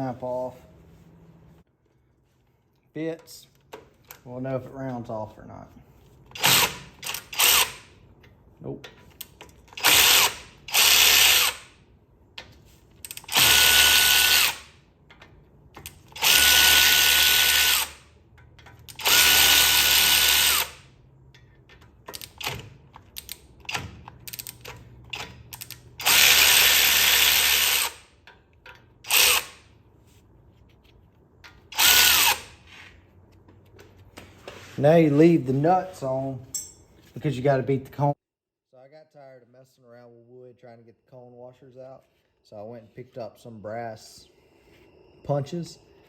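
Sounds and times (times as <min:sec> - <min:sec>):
power tool spinning a socket: 0:06.3 - 0:07.9, 0:09.5 - 0:11.7, 0:13.0 - 0:14.7, 0:15.8 - 0:18.0, 0:18.6 - 0:20.8, 0:22.1 - 0:29.7, 0:31.6 - 0:32.6.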